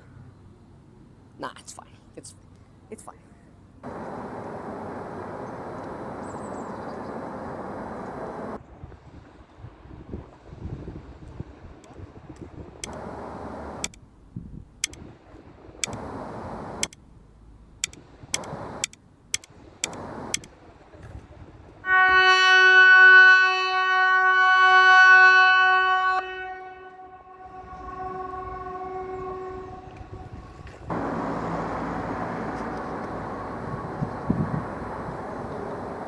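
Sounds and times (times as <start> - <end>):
sharp ticks: 11.8 - 14.0, 14.8 - 15.1, 15.8 - 17.0, 17.8 - 20.6.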